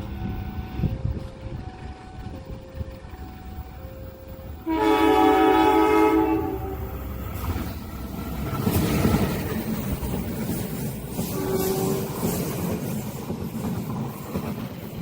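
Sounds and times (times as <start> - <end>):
train rumbling and rattling past: 0.0 - 15.0
train horn blast: 4.6 - 7.1, 11.2 - 12.4.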